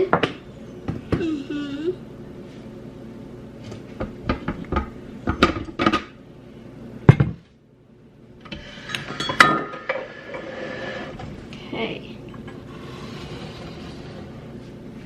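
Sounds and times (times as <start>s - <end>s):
utensils and dishes clinking: 8.8s - 10.5s.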